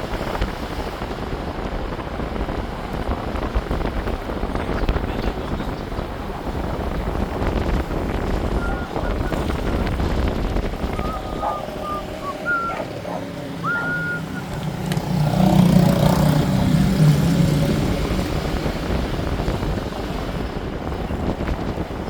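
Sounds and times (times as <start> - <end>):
car engine rumble and road noise: 0.0 - 22.0.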